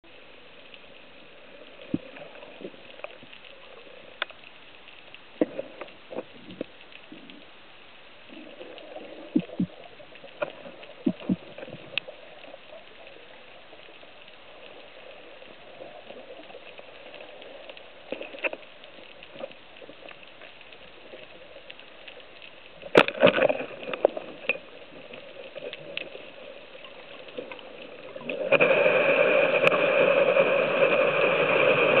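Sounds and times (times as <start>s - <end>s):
faint underwater clicks: 0.1s - 32.0s
rush of water: 8.2s - 32.0s
underwater hiss: 22.8s - 32.0s.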